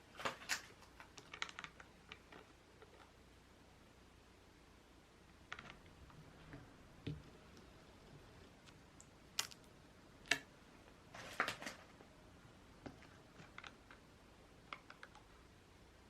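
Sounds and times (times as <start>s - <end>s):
small objects clicking and tapping: 0.2s - 3.2s, 8.6s - 10.5s, 12.8s - 15.3s.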